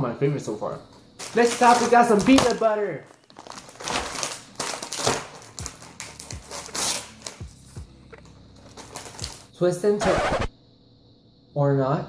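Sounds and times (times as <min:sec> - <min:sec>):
hip-hop music: 0:04.4 - 0:10.5.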